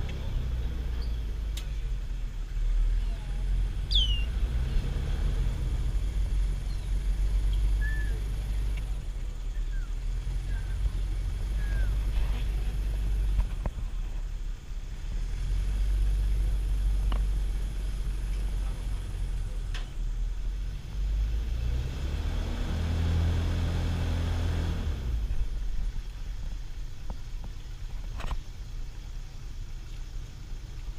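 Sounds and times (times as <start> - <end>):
engine hum: 0.0 - 30.9
short bird chirps: 3.9 - 4.3, 7.5 - 8.2.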